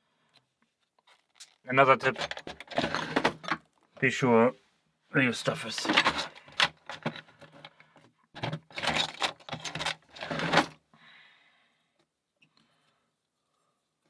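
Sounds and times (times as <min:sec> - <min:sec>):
objects clattering and rattling: 0:01.0 - 0:03.8, 0:05.5 - 0:10.8.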